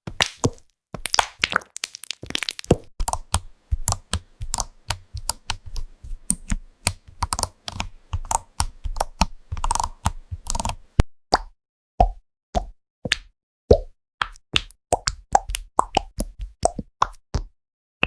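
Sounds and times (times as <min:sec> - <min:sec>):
keyboard typing: 0:03.0 - 0:10.8.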